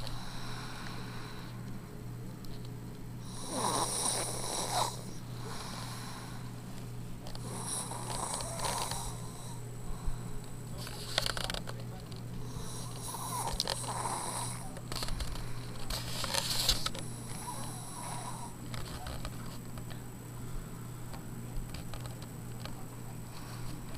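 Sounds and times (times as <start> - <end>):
steady low hum: 0.0 - 23.9
person snoring: 3.2 - 6.5, 7.4 - 10.1, 12.5 - 14.8, 16.7 - 18.6.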